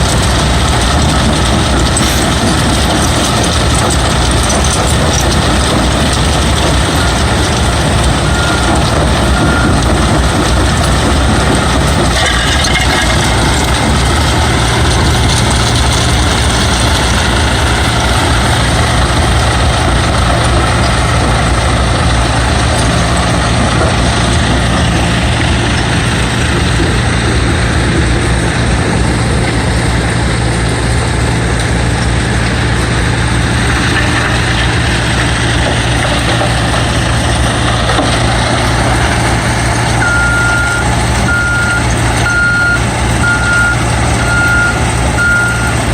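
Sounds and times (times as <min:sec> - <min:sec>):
crusher machinery noise: 0:00.0 - 0:45.9
diesel engine hum: 0:00.0 - 0:45.9
reverse alarm beeping: 0:40.0 - 0:45.8.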